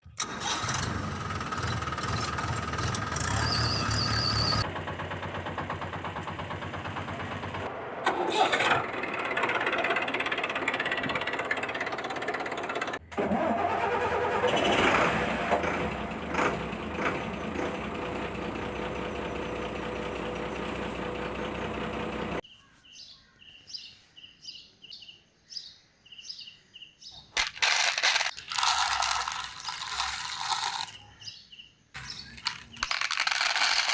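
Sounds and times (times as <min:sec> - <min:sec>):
toy vehicle mechanical noise: 0:00.0 - 0:04.7, 0:08.1 - 0:19.1, 0:27.3 - 0:31.3, 0:32.0 - 0:33.9.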